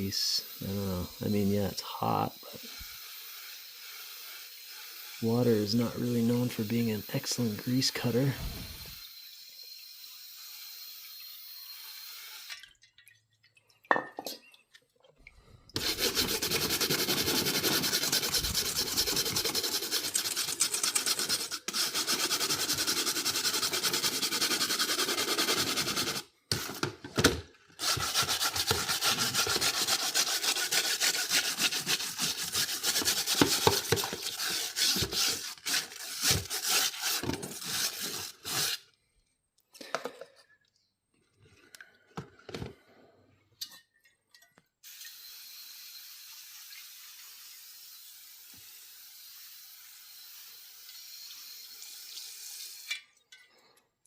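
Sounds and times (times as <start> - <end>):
scrubbing metal grease filter: 15.8 - 26.2, 27.8 - 38.8.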